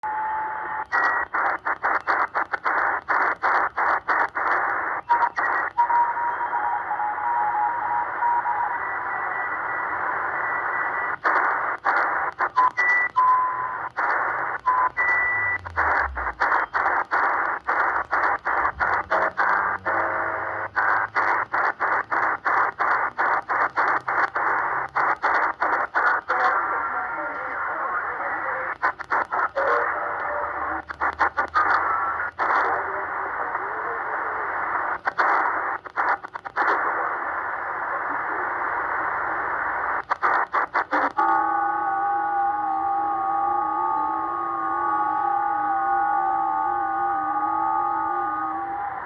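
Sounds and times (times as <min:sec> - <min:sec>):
radio band noise hiss: 0:00.0 - 0:49.0
station signal whistles: 0:05.0 - 0:17.0.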